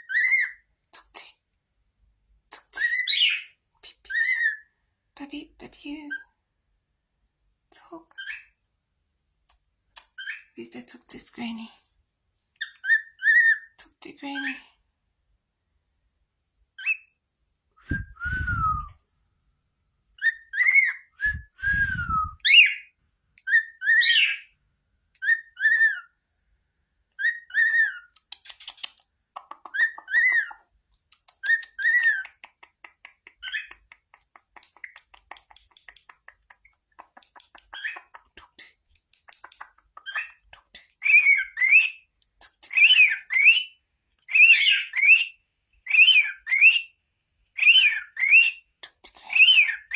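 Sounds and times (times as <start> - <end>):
clicky bird chatter: 28.1 - 30.4, 31.0 - 41.0.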